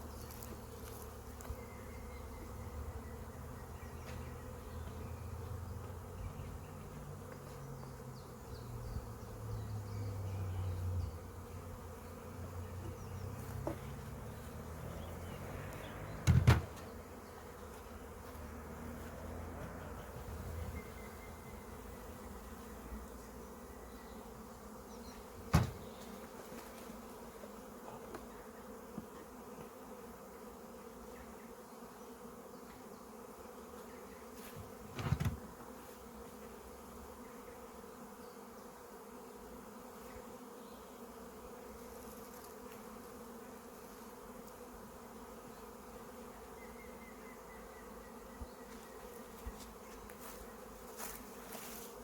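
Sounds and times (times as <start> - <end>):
honeybees buzzing: 0.0 - 52.0
sharp knocks: 16.2 - 16.9, 25.5 - 25.9.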